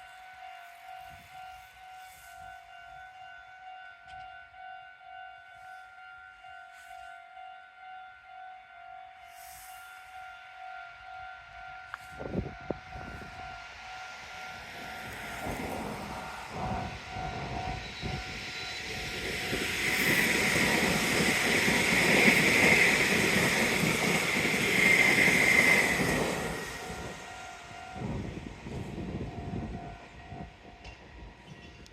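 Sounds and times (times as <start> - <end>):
level-crossing warning bell: 0.0 - 31.9
high rail hiss: 9.3 - 10.3, 11.9 - 29.7
train wheels rumbling on rails: 11.9 - 31.9.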